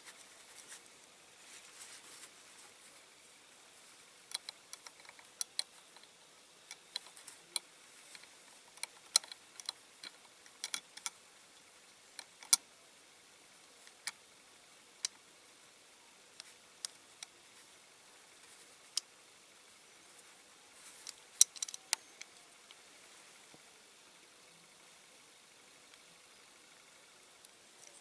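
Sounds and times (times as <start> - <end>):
small parts clicking and tapping: 4.2 - 11.2, 12.1 - 12.7, 20.9 - 22.8.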